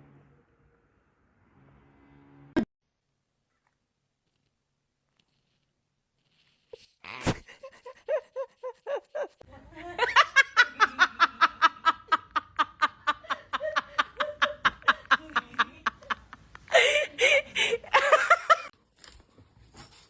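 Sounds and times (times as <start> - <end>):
person laughing: 7.2 - 18.7.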